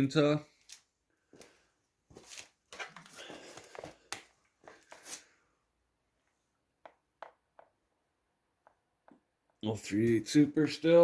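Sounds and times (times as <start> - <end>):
rustling handling noise: 0.5 - 5.4.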